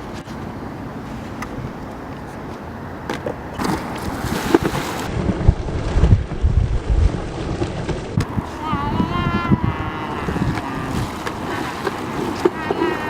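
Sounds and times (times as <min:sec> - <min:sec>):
wind buffeting microphone: 0:03.4 - 0:13.0
water spraying and splashing: 0:03.6 - 0:13.0.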